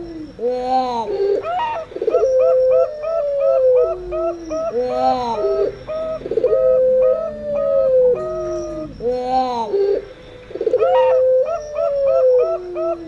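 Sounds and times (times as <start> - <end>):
doves cooing: 0.0 - 13.0.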